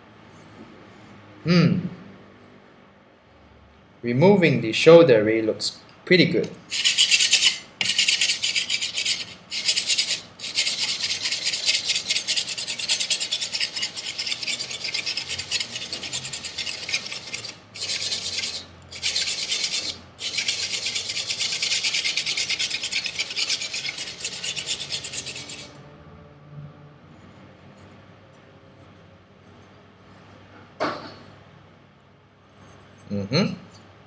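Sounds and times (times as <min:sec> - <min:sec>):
knife blade scraping on sandpaper: 0:06.4 - 0:25.8.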